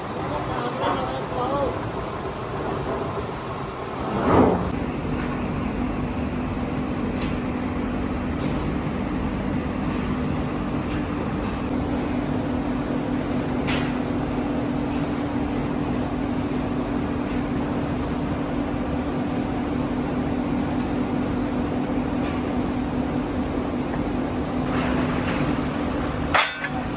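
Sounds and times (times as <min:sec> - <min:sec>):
factory machinery humming: 0:04.7 - 0:12.1, 0:24.6 - 0:26.9.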